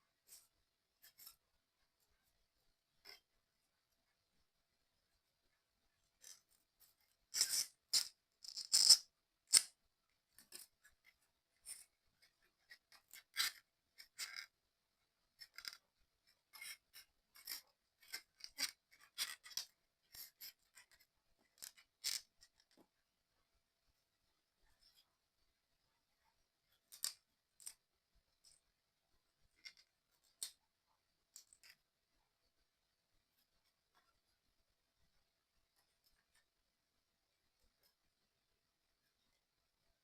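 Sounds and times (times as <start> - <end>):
puzzle pieces clicking and tapping: 7.4 - 9.7.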